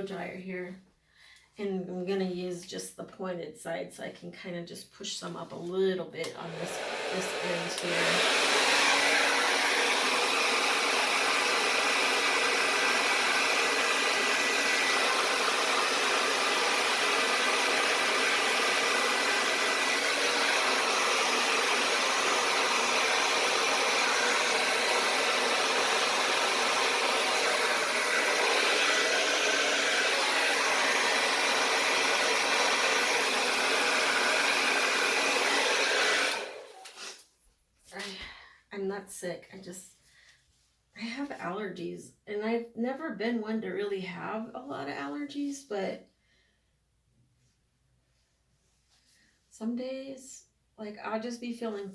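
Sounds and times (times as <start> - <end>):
hair dryer blowing: 5.6 - 37.2.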